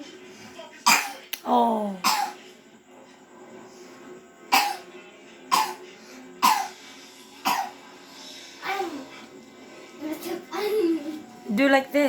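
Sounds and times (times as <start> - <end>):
child coughing: 0.9 - 1.3, 2.0 - 2.4, 4.5 - 4.9, 5.5 - 5.8, 6.4 - 6.8, 7.4 - 7.8.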